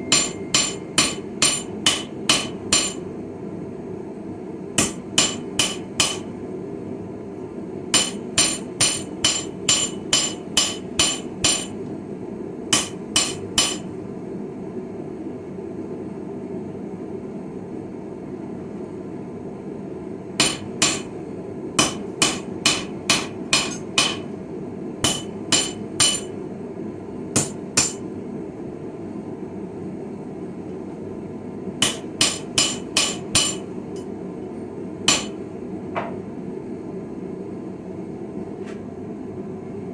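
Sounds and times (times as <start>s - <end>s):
hammer ringing on anvil: 0.0s - 3.0s, 4.8s - 6.3s, 8.0s - 11.8s, 12.8s - 13.9s, 20.4s - 21.1s, 21.8s - 24.3s, 25.0s - 26.3s, 27.4s - 28.0s, 31.8s - 34.1s, 35.1s - 35.4s.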